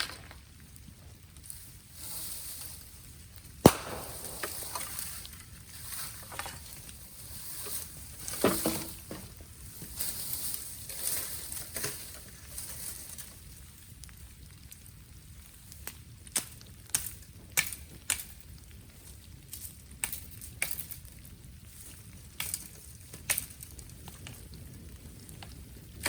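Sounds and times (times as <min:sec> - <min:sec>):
bamboo fire crackling: 0:00.0 - 0:26.0
loud pop from fire: 0:03.6 - 0:05.4.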